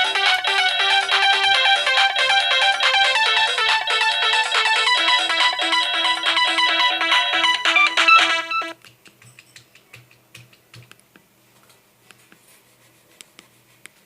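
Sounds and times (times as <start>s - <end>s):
phone ringtone melody: 0.0s - 8.8s.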